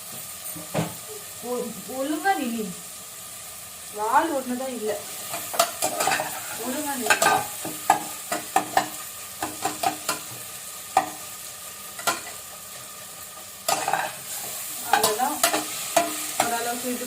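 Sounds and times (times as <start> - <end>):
food sizzling: 0.0 - 17.0
ladle knocking and scraping pan: 5.4 - 10.4, 13.7 - 16.5.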